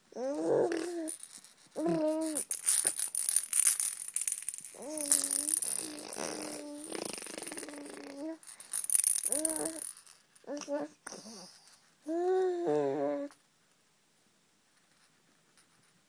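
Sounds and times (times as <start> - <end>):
baby high-pitched vocal sounds: 0.1 - 1.1, 4.8 - 8.4, 12.1 - 13.3
baby blowing raspberries: 4.8 - 8.4.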